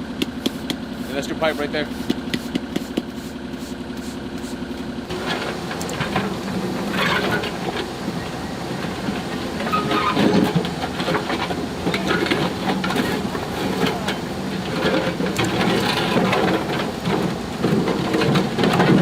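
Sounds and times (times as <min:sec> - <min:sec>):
machinery engine running: 0:00.0 - 0:19.0
scraping and knocking: 0:05.1 - 0:19.0.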